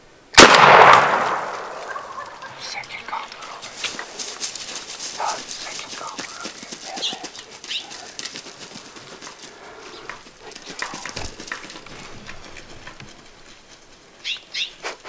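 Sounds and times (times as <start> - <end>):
rustling: 1.5 - 15.0
bird chirps: 14.2 - 14.8.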